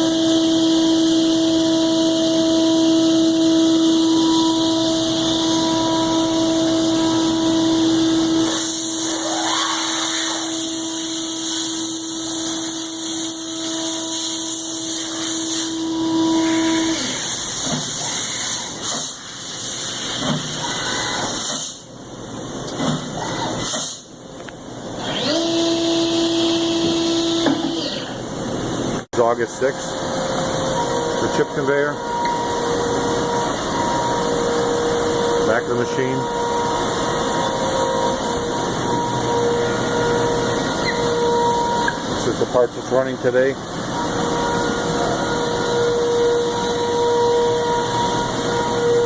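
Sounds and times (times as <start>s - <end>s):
mill spindle whining: 0.0s - 18.9s, 24.4s - 49.0s
hiss: 8.4s - 15.8s, 16.4s - 21.8s.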